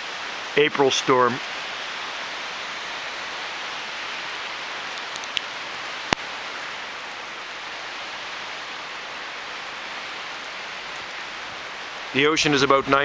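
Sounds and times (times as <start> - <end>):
wind-driven rain hissing: 0.0 - 13.0
small ticks: 4.9 - 5.5.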